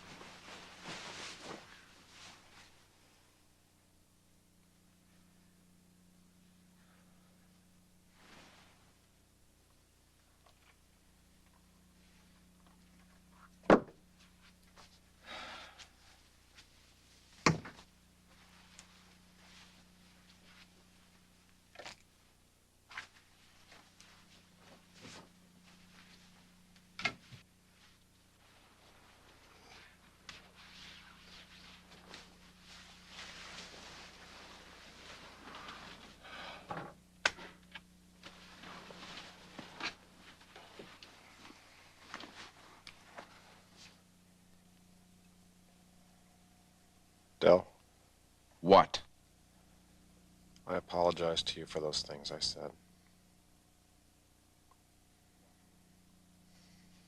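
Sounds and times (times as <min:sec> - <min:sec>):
faint soft rustling: 0:00.0 - 0:03.5, 0:06.6 - 0:36.6, 0:38.0 - 0:47.2
steady low hum: 0:00.0 - 0:57.0.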